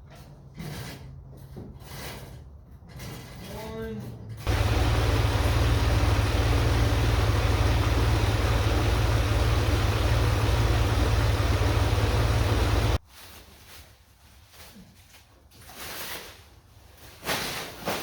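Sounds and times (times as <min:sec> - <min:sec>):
engine idling with low rumble: 0:04.5 - 0:13.0.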